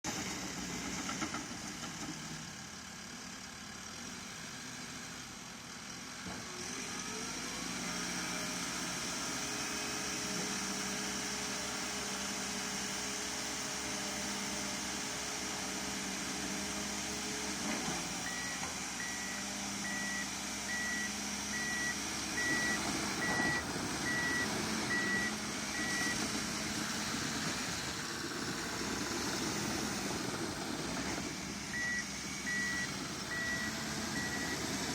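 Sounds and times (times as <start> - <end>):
dozer diesel engine running: 0.1 - 34.9
backup alarm beeping: 18.3 - 26.1, 31.7 - 34.5.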